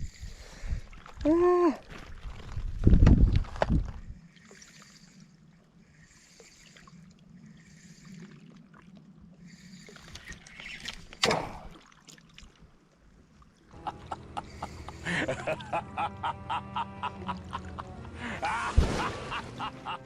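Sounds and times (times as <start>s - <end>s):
splash or knock: 18.7s - 19.7s.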